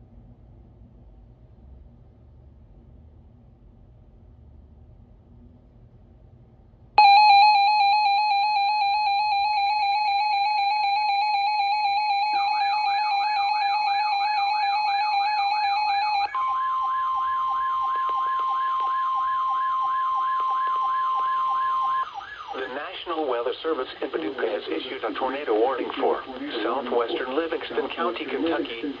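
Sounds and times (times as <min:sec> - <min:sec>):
fast rising and falling siren: 0:07.0 - 0:22.7
steady warning alarm tone: 0:07.0 - 0:22.7
two-tone alarm: 0:07.0 - 0:22.8.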